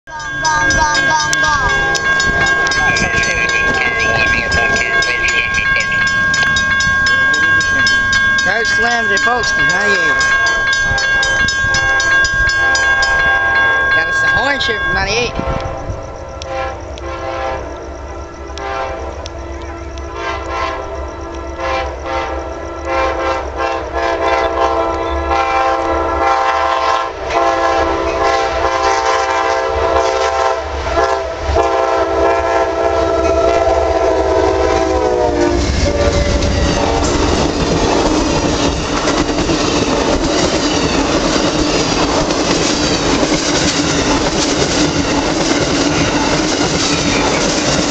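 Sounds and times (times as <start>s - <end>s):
locomotive air horn chord: 11.8s - 14.0s, 15.3s - 17.9s, 18.6s - 38.1s
train wheels clicking over rail joints: 35.6s - 47.9s.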